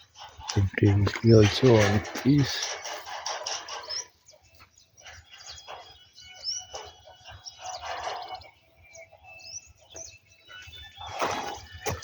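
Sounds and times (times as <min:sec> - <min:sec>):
faint bird chirps: 0:03.6 - 0:12.0.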